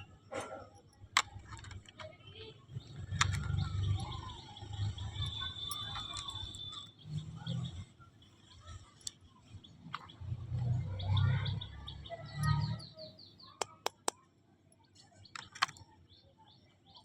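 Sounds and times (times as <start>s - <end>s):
small birds chirping: 0.0s - 17.0s
sharp clicks: 2.8s - 6.9s, 13.6s - 14.2s.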